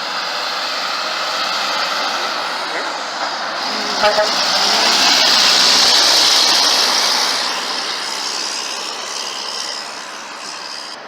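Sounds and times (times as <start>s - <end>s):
vehicle passing: 3.4s - 9.0s.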